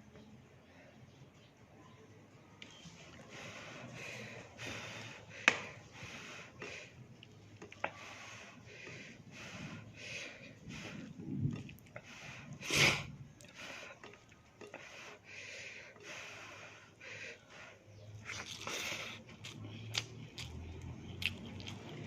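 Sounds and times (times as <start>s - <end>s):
breathing through nose: 7.9s - 11.3s, 12.0s - 14.0s, 14.6s - 17.9s
person chewing: 18.2s - 22.0s.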